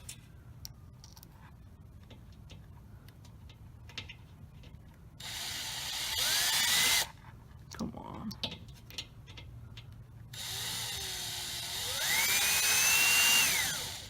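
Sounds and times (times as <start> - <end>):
power drill whining: 5.2 - 7.1, 10.4 - 14.0.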